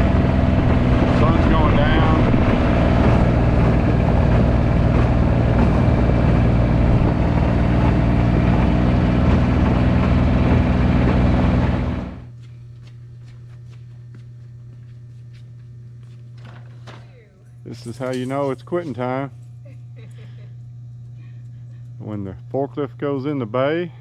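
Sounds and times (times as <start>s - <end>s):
vehicle engine running: 0.0s - 16.4s
steady low hum: 0.0s - 24.0s.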